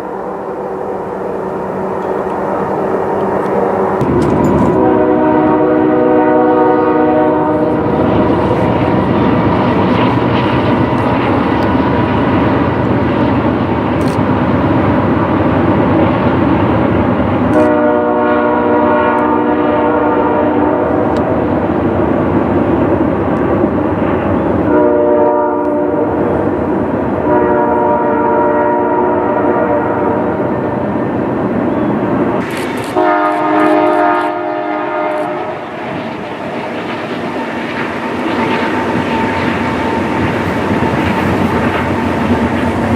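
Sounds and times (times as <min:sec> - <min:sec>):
train rumble and wheel noise: 0:00.0 - 0:42.9
locomotive horn blasts: 0:01.9 - 0:08.2, 0:17.5 - 0:21.1, 0:24.7 - 0:26.2, 0:27.2 - 0:30.4, 0:32.8 - 0:35.6.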